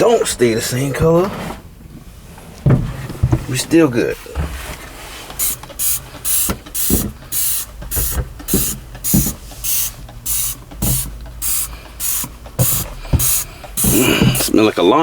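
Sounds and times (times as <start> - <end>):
spray bottle hissing: 5.4 - 14.5
spray trigger click: 5.4 - 14.5.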